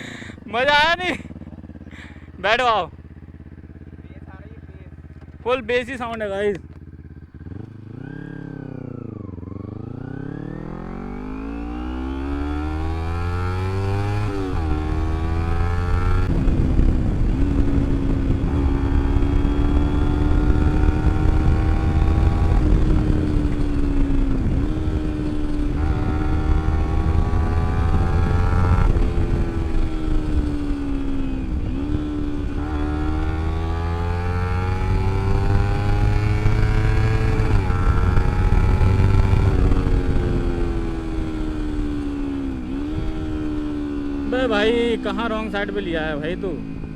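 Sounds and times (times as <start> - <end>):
motorcycle engine revving: 0.0 - 46.9
wind rush: 16.0 - 44.3.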